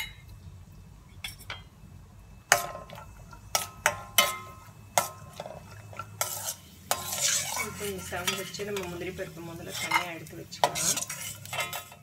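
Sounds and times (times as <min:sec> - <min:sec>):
utensil clinking metal pan: 0:02.5 - 0:12.0.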